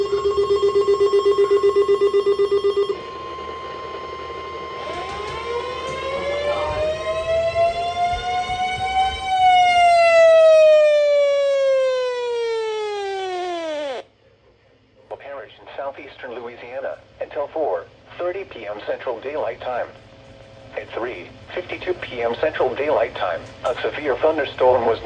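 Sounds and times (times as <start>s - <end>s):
steady high tone: 0.0s - 14.1s
warning siren winding: 0.0s - 14.1s.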